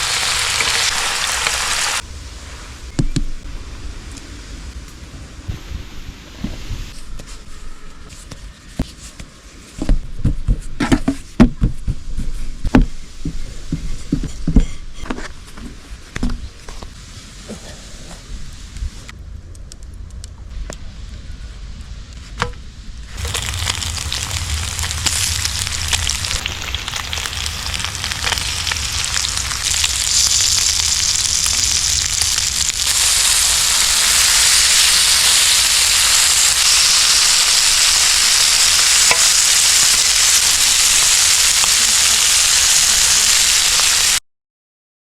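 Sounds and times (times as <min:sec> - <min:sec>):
steak sizzling: 0:00.0 - 0:02.0, 0:23.1 - 0:44.2.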